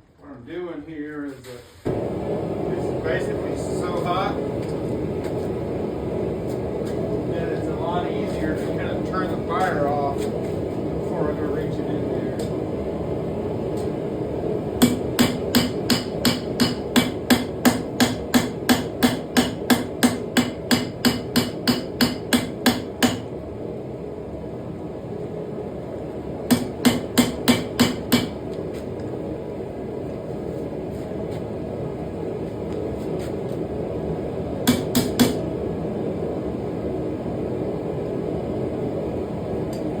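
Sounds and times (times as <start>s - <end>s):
forge running: 1.8s - 40.0s
hammer ringing on hot steel: 14.8s - 23.3s, 26.5s - 28.4s, 34.7s - 35.4s.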